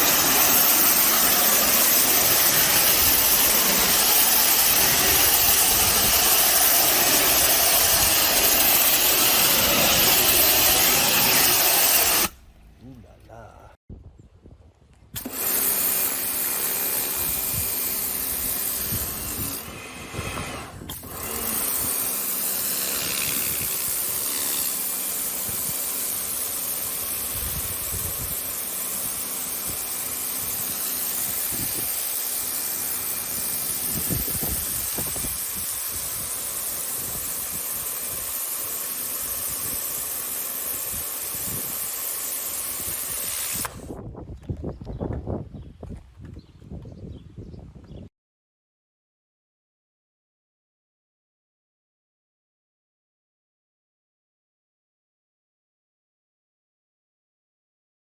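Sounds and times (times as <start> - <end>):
pressure washer spraying: 0.0 - 12.5, 15.2 - 43.9.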